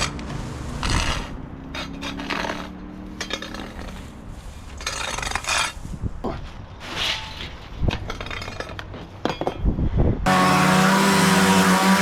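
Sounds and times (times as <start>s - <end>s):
debris rustling and scraping: 0.0s - 9.1s.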